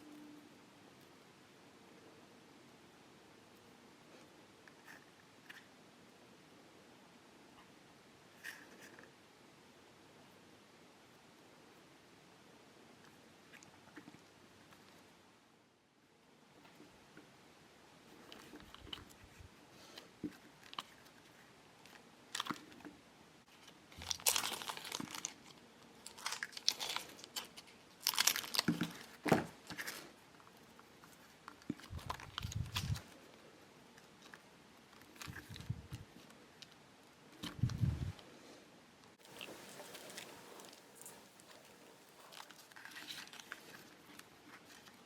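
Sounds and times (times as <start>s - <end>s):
plastic packets crinkling and tearing: 24.0s - 29.8s, 39.2s - 43.9s.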